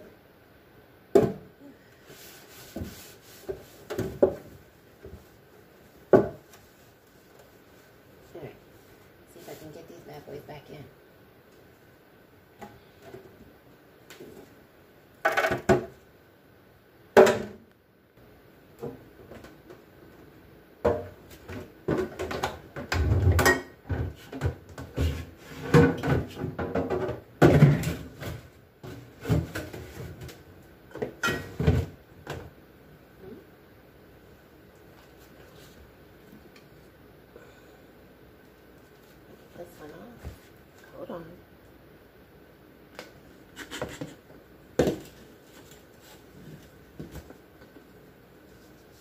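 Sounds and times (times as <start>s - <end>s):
items knocking in a refrigerator: 6.1s - 6.5s, 17.2s - 17.6s, 20.8s - 30.3s, 30.9s - 32.5s.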